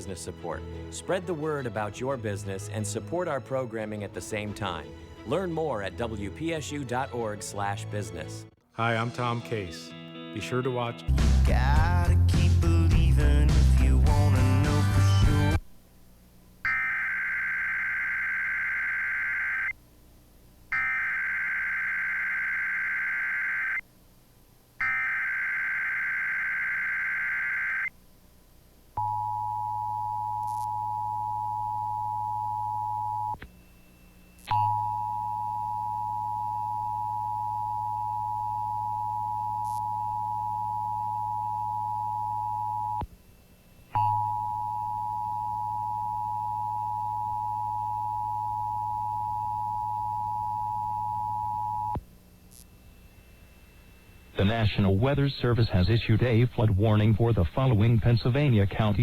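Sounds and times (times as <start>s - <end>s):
buzzing digital data tones: 16.7s - 19.7s, 20.7s - 23.8s, 24.8s - 27.9s, 34.4s - 43.0s.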